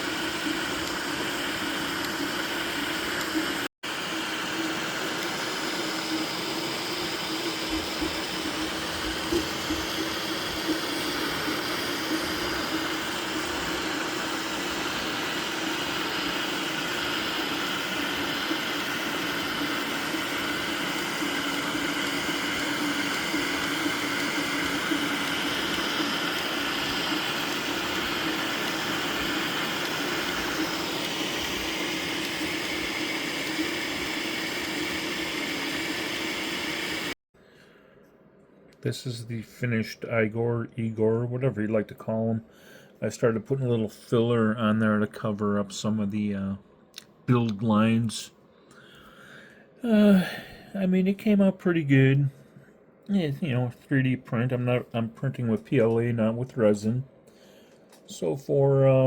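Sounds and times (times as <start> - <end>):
stepper motors whining: 0.0 - 37.1
fan hum: 0.0 - 59.0.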